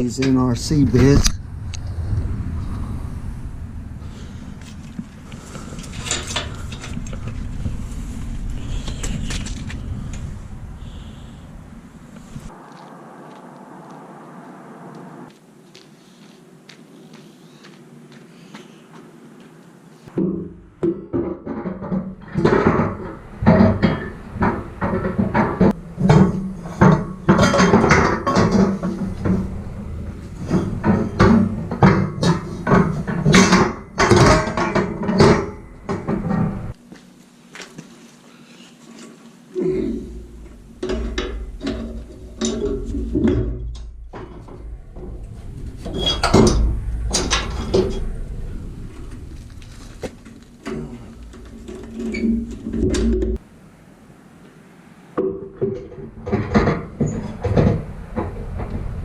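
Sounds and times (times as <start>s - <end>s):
low rumble: 0.4s - 15.3s, 22.9s - 36.8s, 39.6s - 53.4s
tow gear knocks and clanks: 20.1s - 36.8s.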